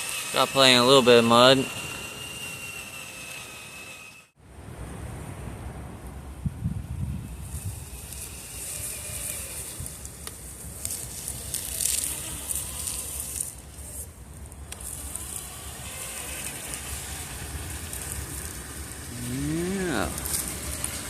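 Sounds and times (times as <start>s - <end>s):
electric motor whine: 0.0s - 4.4s, 7.2s - 21.0s
tires crackling on wet mud: 7.3s - 21.0s.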